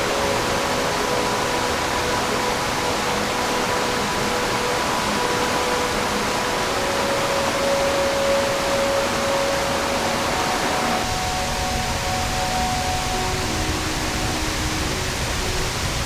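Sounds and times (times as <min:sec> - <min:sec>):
faint steady tones: 0:00.0 - 0:16.0
stream water rushing: 0:00.0 - 0:16.0.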